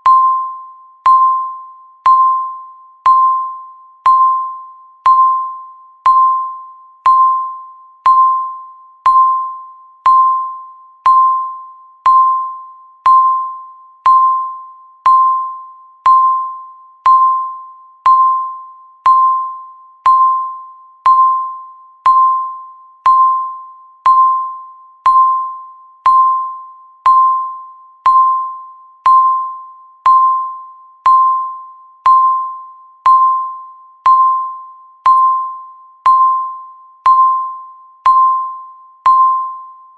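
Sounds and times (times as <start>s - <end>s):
timer beeping: 0.0s - 39.9s.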